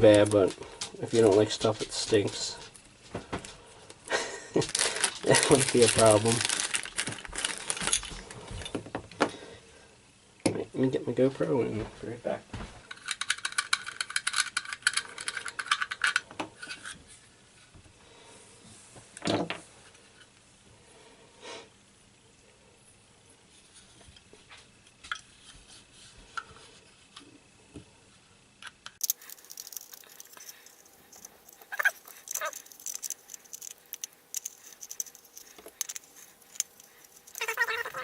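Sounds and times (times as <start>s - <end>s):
plastic and metal parts clicking: 12.9s - 16.2s, 28.9s - 38.0s.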